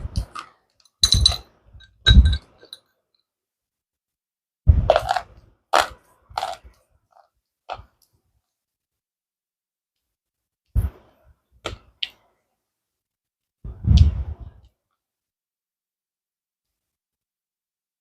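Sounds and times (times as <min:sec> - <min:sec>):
brittle crunching while chewing: 0:04.9 - 0:07.9.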